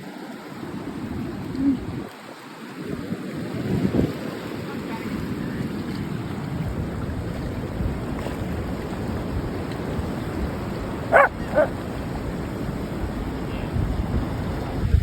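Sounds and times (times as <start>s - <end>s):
wind: 0.0s - 15.0s
surf: 2.9s - 15.0s
dog barking: 11.1s - 11.8s.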